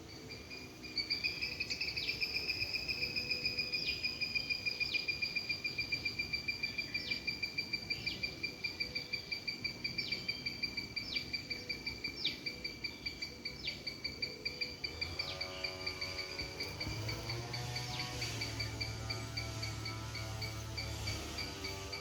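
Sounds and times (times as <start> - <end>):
insect-like pulsing trill: 0.0 - 22.0.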